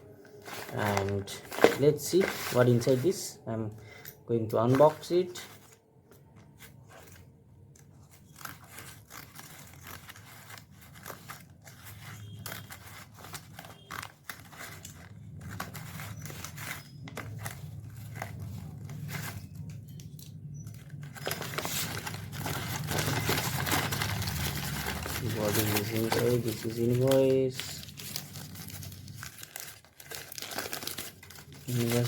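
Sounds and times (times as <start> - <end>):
packaging snipping and tearing: 7.0 - 32.0.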